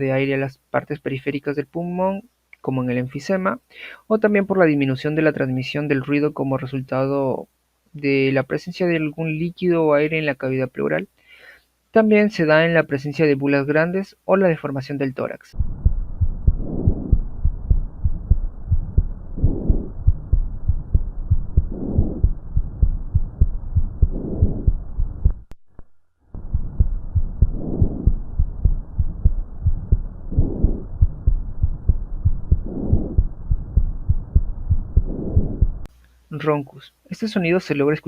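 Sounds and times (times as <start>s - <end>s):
breath sounds through stethoscope: 3.7s - 4.1s, 11.2s - 11.8s
low thudding: 15.6s - 35.9s.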